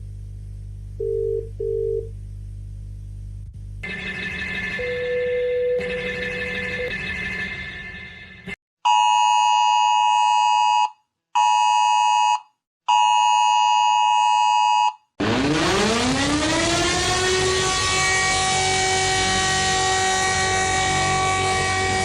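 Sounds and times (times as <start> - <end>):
harsh two-tone alert beeps: 3.8 - 7.9
siren winding up: 3.8 - 8.6, 15.2 - 22.0.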